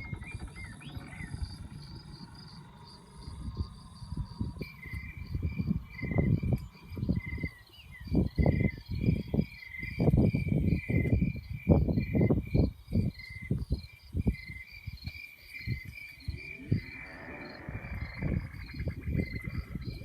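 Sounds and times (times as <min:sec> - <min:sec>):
low rumbles and thumps: 0:00.0 - 0:07.5, 0:15.7 - 0:20.0
crickets chirping: 0:00.0 - 0:20.0.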